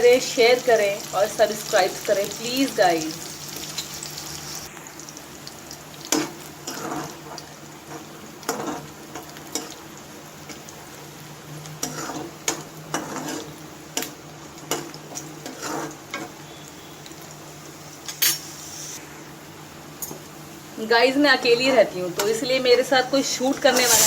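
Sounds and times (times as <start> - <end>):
onions sizzling in oil: 0.0 - 24.0
spatula scraping a pan: 6.6 - 7.2, 11.8 - 12.3, 12.9 - 13.6, 15.4 - 16.3, 23.7 - 24.0.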